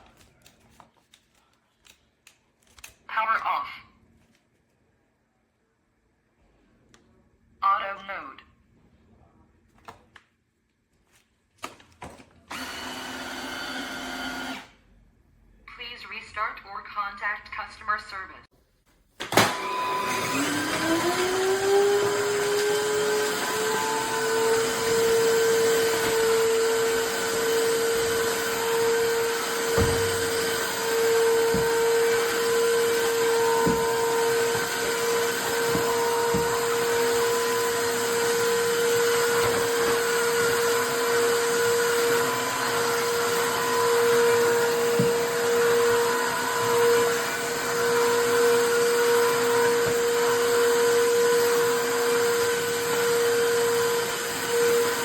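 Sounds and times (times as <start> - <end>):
floor cleaner motor humming: 12.5 - 14.7, 19.2 - 55.0
suction noise: 19.5 - 55.0.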